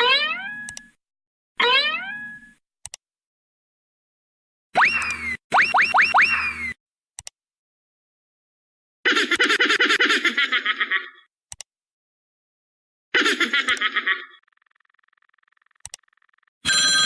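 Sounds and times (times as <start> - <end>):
giggling laughter: 9.1 - 11.3, 13.2 - 14.5.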